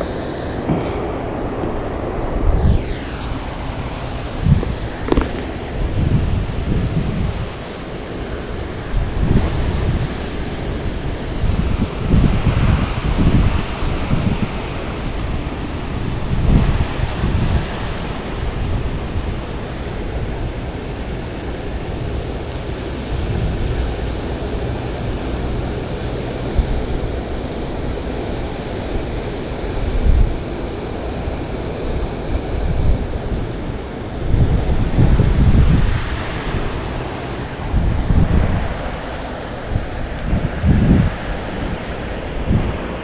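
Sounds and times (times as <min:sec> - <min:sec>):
wind buffeting microphone: 0:00.0 - 0:20.7, 0:31.2 - 0:43.0
low rumbling wind gusts: 0:00.0 - 0:43.0.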